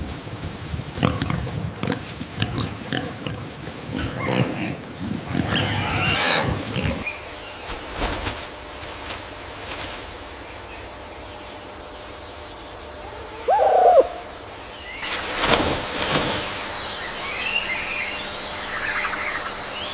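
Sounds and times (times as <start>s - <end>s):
pigs grunting: 1.0s - 7.2s.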